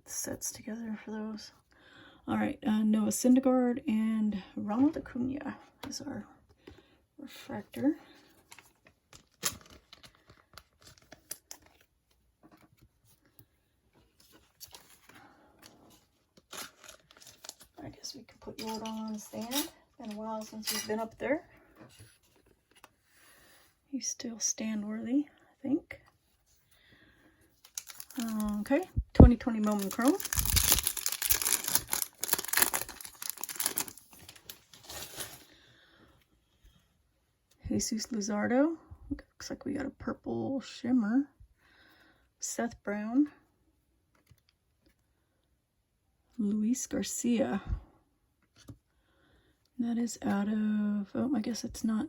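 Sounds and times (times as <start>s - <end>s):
packaging rustling: 8.4s - 13.3s, 14.1s - 17.8s, 27.6s - 35.5s
foil wrapper tearing and crinkling: 8.5s - 11.8s, 27.7s - 28.8s, 29.6s - 35.4s.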